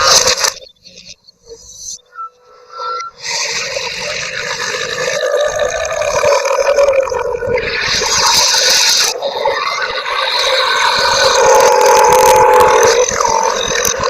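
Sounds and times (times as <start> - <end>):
cartoon burps: 4.6 - 7.3.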